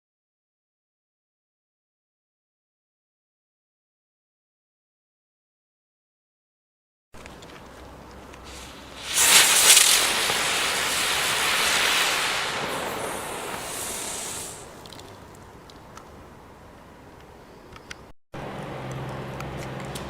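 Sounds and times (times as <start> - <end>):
firework hissing: 8.4 - 14.8.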